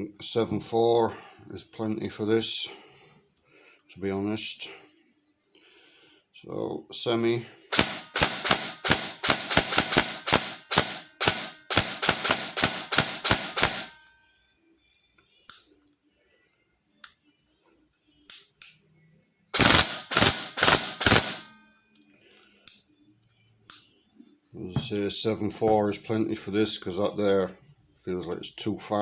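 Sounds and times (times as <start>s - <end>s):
airsoft gun firing shots: 7.7s - 14.0s, 19.6s - 21.5s.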